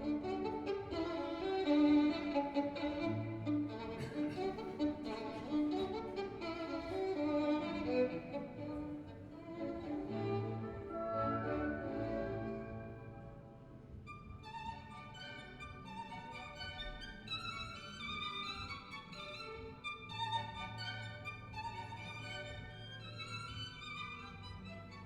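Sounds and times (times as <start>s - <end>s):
violin with vibrato: 0.0s - 13.4s.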